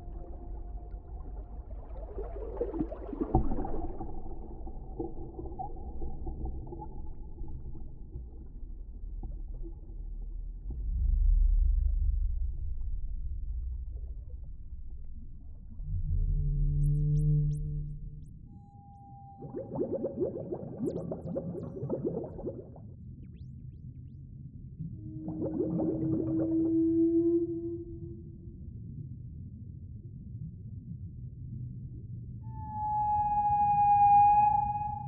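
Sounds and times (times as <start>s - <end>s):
bubbling and crackling: 0.0s - 10.7s, 19.3s - 23.5s, 24.8s - 26.9s
deep underwater rumble: 0.0s - 35.0s.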